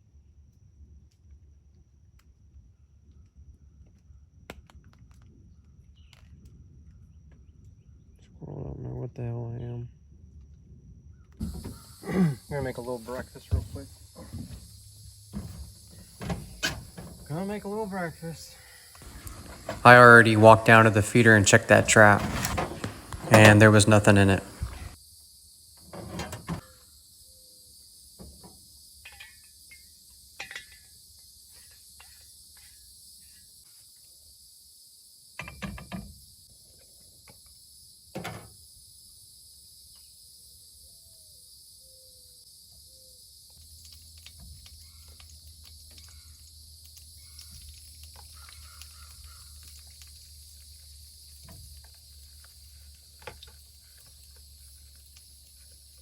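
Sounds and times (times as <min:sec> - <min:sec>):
insects chorus: 0:05.5 - 0:56.0
camp gear clattering: 0:19.0 - 0:25.0.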